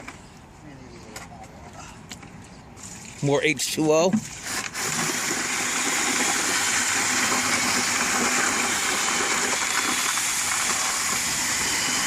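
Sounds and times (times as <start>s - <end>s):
water pouring into bucket: 4.2s - 12.0s.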